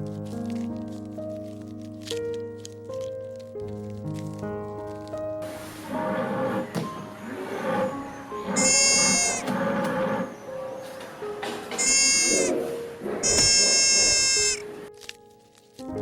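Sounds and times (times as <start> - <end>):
soft background music: 0.0 - 16.0
high-pitched animal calls: 7.3 - 10.9, 11.7 - 14.8.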